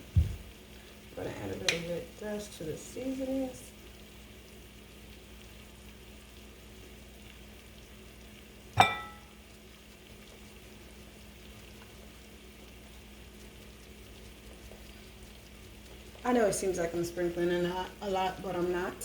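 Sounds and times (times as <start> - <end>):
faint hiss and hum: 0.0 - 19.0
utensil clinking on dish: 8.8 - 9.3.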